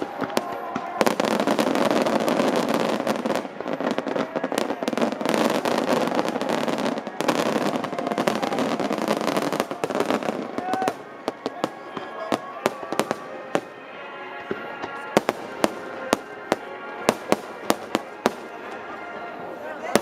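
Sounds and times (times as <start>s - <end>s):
fireworks booming and crackling: 0.0s - 20.0s.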